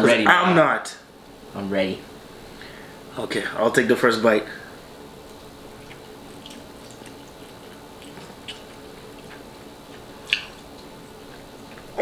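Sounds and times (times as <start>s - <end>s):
wet mouth clicks and smacks: 5.2s - 12.0s.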